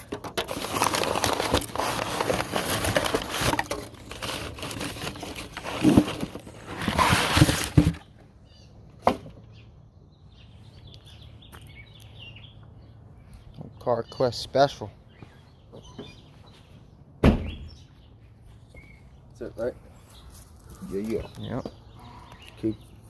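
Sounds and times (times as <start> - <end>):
rustling and knocking: 0.0 - 8.1.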